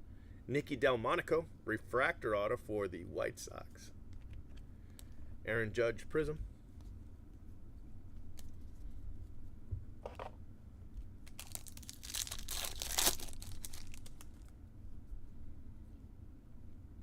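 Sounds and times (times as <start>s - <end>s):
foil wrapper tearing and crinkling: 11.2s - 14.5s.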